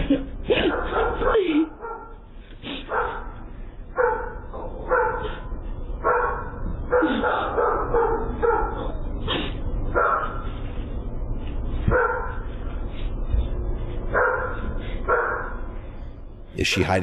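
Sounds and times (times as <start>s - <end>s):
dog barking: 0.5s - 2.2s, 2.8s - 3.4s, 4.0s - 5.4s, 6.0s - 9.0s, 9.9s - 10.5s, 11.9s - 12.5s, 14.1s - 15.6s.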